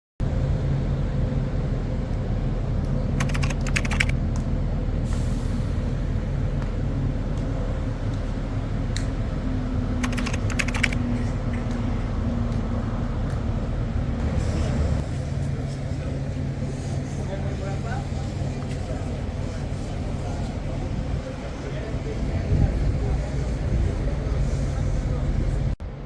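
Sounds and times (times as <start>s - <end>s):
vehicle engine and road rumble: 0.2s - 26.0s
rapid clicking or rattling: 3.2s - 4.1s, 10.0s - 11.0s.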